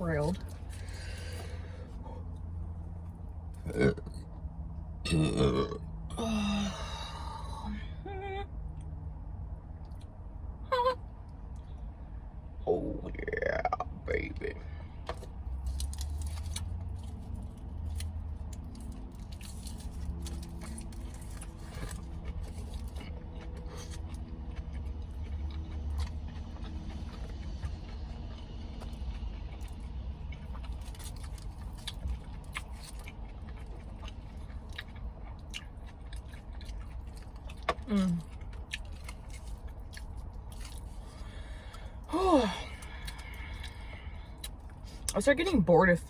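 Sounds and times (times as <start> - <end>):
person chewing: 15.0 - 45.2.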